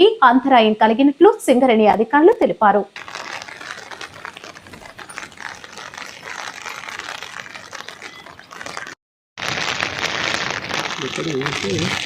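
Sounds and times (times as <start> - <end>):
rain falling: 3.0 - 9.0, 9.9 - 12.0.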